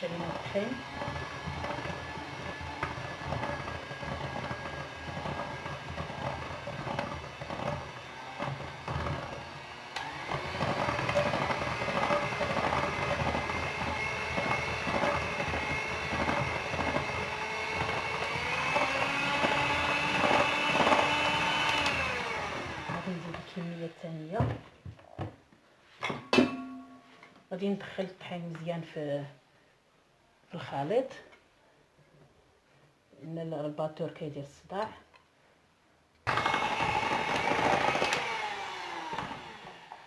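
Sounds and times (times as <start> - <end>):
electric hand mixer running: 0.0 - 24.0, 36.3 - 40.0.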